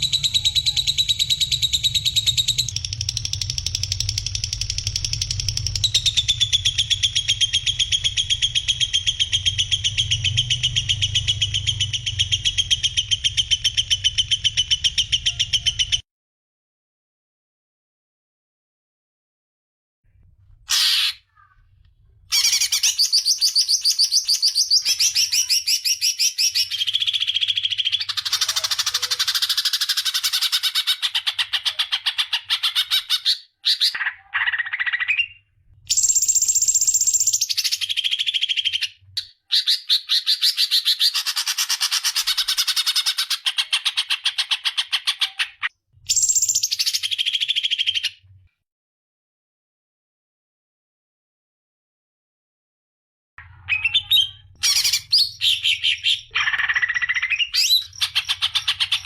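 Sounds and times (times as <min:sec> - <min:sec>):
songbird trills and chatter: 0:22.3 - 0:39.0, 0:53.5 - 0:59.0.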